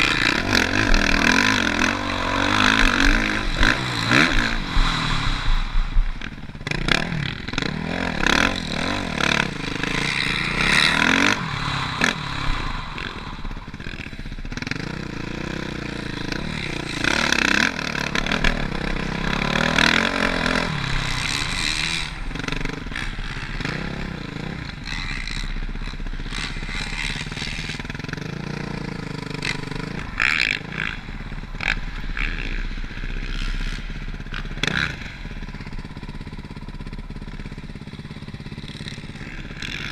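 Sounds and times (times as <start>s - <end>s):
motocross bike engine revving: 0.0s - 39.9s.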